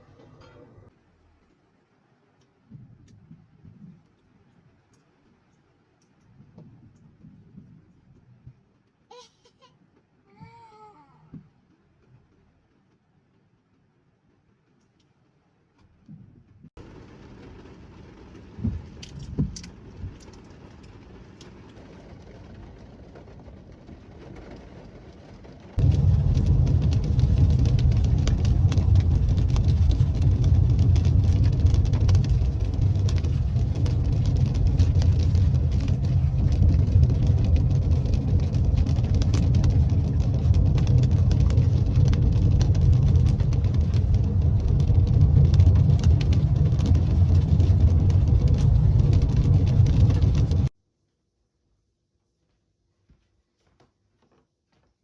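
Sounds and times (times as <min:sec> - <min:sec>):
car driving rumble: 0:16.8 - 0:50.7.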